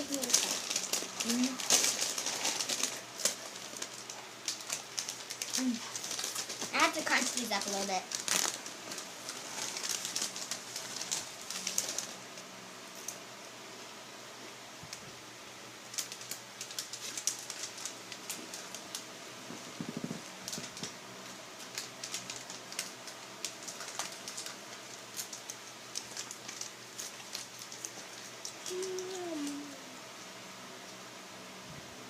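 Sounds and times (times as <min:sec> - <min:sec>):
crunchy snacks being crushed: 0:00.0 - 0:12.2, 0:15.9 - 0:19.0, 0:21.6 - 0:29.6.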